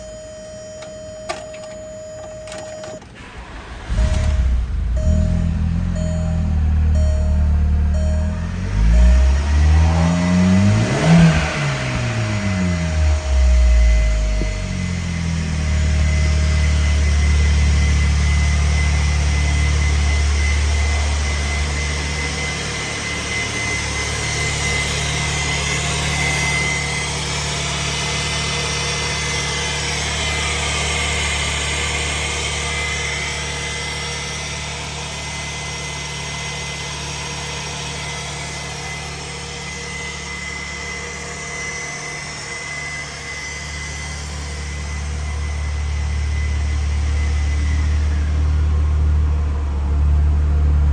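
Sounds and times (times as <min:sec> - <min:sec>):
car engine idling: 0:03.0 - 0:50.9
thin high whine: 0:04.0 - 0:49.4.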